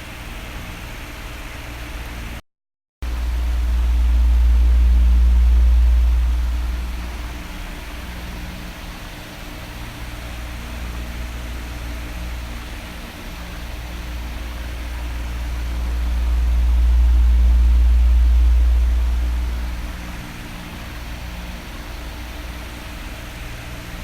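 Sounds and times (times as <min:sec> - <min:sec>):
low rumble: 0:03.0 - 0:08.8, 0:14.0 - 0:22.4
electric fan running: 0:03.0 - 0:24.0.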